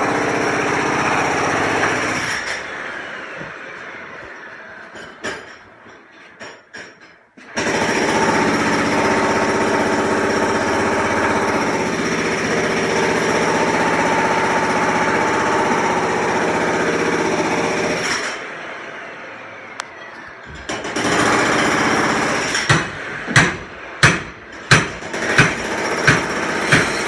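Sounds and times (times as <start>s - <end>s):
jackhammer hammering: 0.0s - 2.7s, 6.4s - 18.4s, 20.6s - 27.0s.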